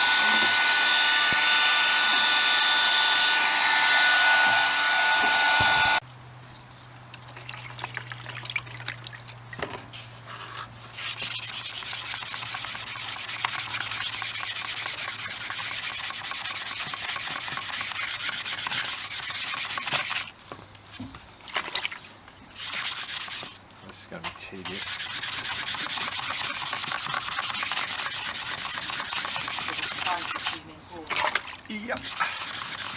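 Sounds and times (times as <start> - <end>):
loud steady blowing noise: 0.0 - 6.0
wet-sanding plastic by hand: 10.7 - 20.3, 22.5 - 30.7, 31.7 - 32.9.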